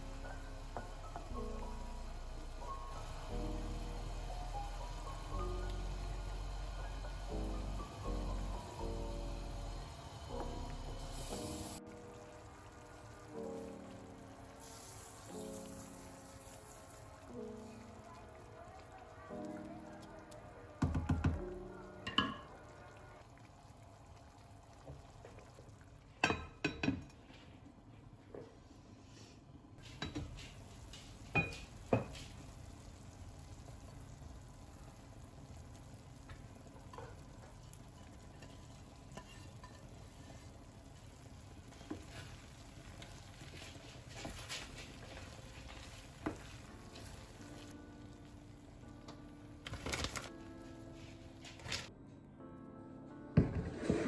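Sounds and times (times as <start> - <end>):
faint steady hiss: 0.0 - 20.8
utensils clinking on pan and dishes: 31.3 - 32.3, 38.3 - 40.0.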